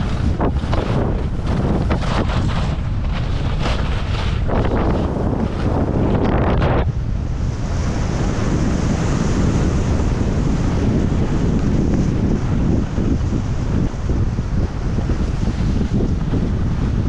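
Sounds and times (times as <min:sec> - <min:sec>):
skis sliding on snow: 0:00.0 - 0:06.8
wind buffeting microphone: 0:00.0 - 0:17.0.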